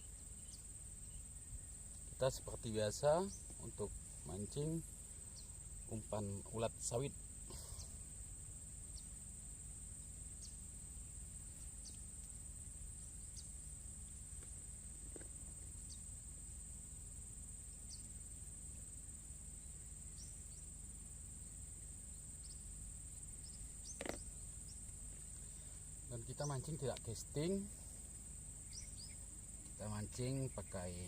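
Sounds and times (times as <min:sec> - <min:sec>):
high-pitched insect drone: 0:00.0 - 0:31.0.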